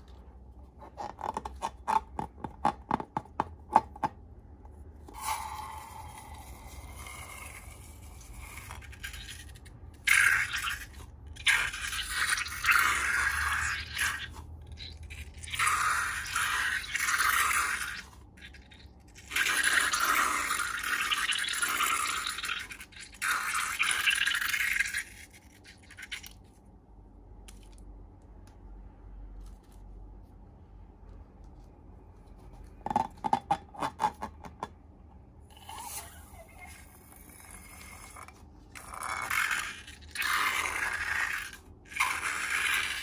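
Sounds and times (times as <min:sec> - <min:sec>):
sticky slime scraping: 0:36.6 - 0:43.0.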